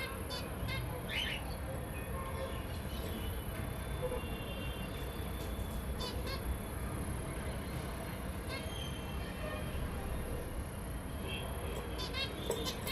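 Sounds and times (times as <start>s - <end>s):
finches chirping: 0.0s - 1.7s, 5.7s - 6.6s, 11.8s - 12.9s
low background hum: 10.1s - 12.9s.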